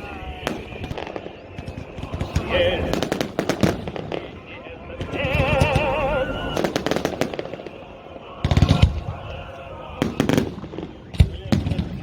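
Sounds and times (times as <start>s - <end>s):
fireworks booming and crackling: 0.0s - 12.0s.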